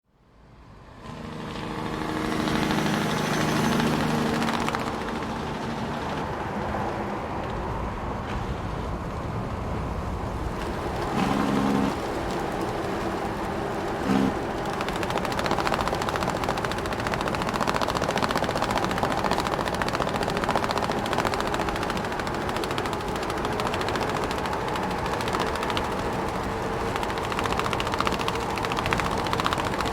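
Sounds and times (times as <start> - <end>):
truck running: 0.5 - 29.9
cargo straps rattling and flapping: 2.5 - 6.8, 10.5 - 29.9.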